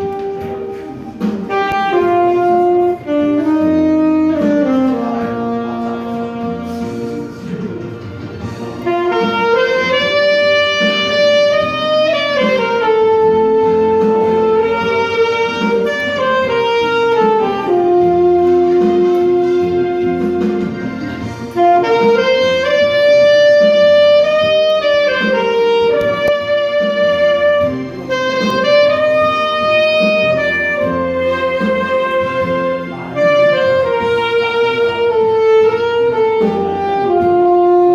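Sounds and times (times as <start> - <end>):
instrumental accompaniment: 0.0 - 37.9
saxophone playing slow ballad: 0.0 - 37.9.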